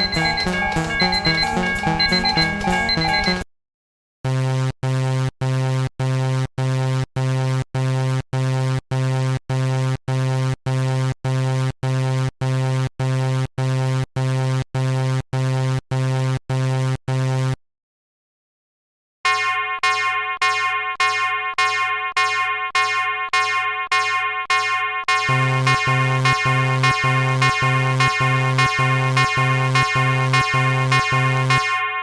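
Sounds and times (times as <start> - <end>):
buzzy electronic crossing alarm: 0.0 - 3.5, 19.3 - 32.0.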